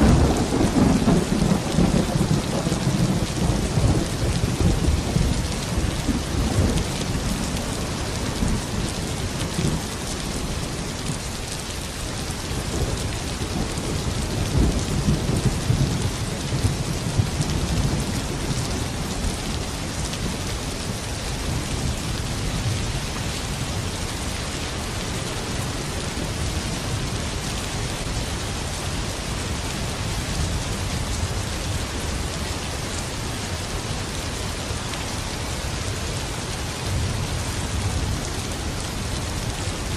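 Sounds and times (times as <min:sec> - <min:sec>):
rolling thunder: 0:00.0 - 0:07.5
steady rain falling: 0:00.0 - 0:39.9.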